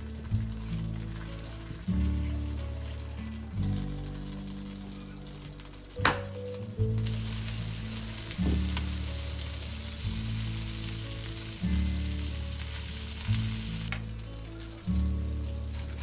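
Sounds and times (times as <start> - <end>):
background music with low chords: 0.0 - 16.0
food sizzling in a pan: 0.0 - 16.0.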